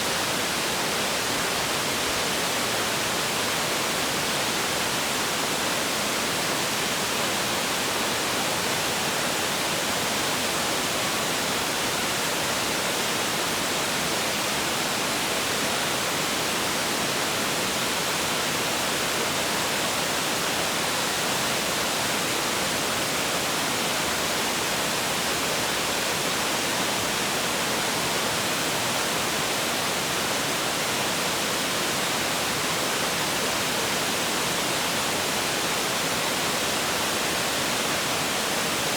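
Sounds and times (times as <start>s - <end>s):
waterfall rushing and splashing: 0.0s - 38.9s.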